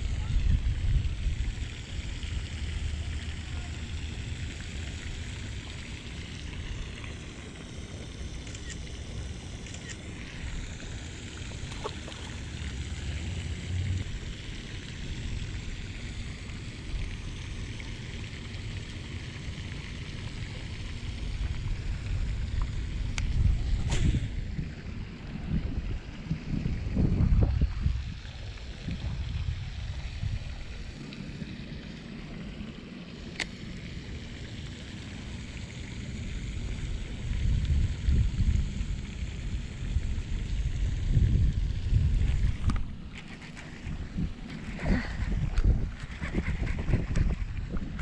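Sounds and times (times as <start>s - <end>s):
wind buffeting microphone: 0.0s - 2.2s, 21.3s - 30.9s, 37.0s - 48.0s
steady outdoor hiss: 0.0s - 48.0s.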